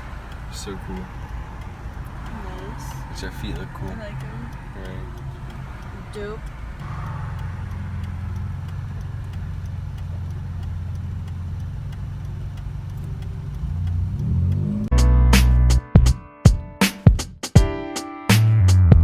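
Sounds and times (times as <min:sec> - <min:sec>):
car engine drone: 0:00.0 - 0:16.1
loud music with a beat: 0:14.9 - 0:19.0.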